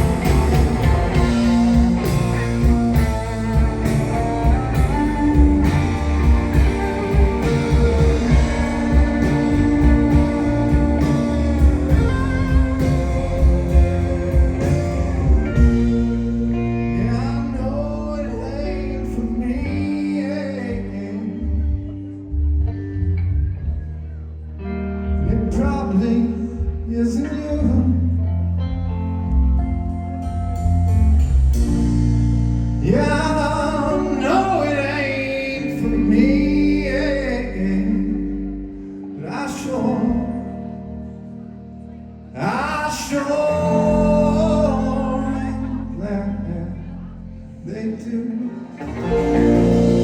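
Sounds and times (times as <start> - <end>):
live band playing: 0.0 - 19.3, 29.0 - 35.4, 48.7 - 50.0
person singing: 0.0 - 22.2, 32.8 - 41.2, 42.4 - 50.0.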